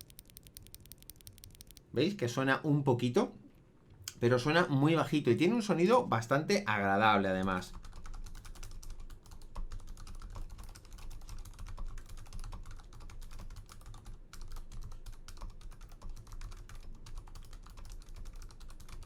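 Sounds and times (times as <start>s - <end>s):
muted mechanical keyboard typing: 0.0s - 2.0s, 7.4s - 19.0s.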